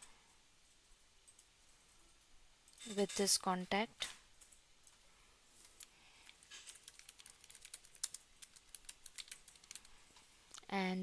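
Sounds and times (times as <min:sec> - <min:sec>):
computer keyboard typing: 0:06.2 - 0:10.0.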